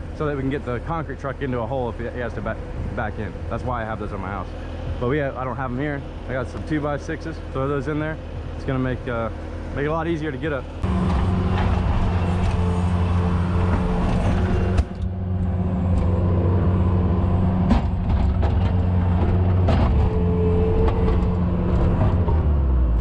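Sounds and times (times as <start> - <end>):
skid steer engine running: 0.0 - 23.0
machine knocks and clanks: 17.6 - 22.4.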